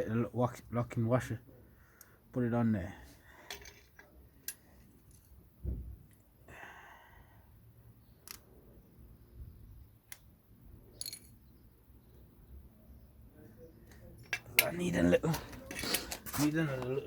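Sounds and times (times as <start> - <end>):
small metal parts clicking: 8.2 - 8.5, 10.9 - 11.5.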